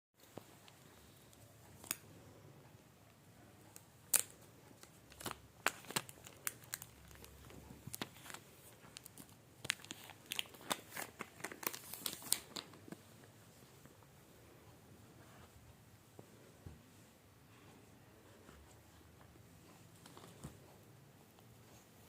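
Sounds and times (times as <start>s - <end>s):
packaging crinkling and tearing: 4.1s - 13.0s.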